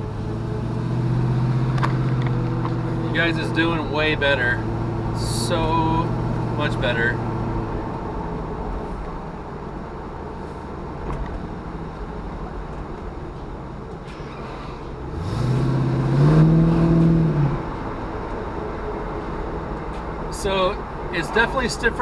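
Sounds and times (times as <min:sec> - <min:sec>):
car engine revving: 0:00.0 - 0:08.8, 0:13.9 - 0:22.0
road rumble: 0:00.0 - 0:22.0.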